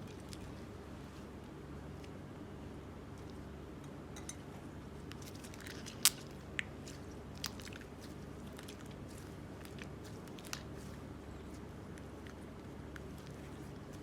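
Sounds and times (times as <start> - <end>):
steady low hum: 0.0 - 14.0
chalk crunching and cracking: 5.1 - 14.0.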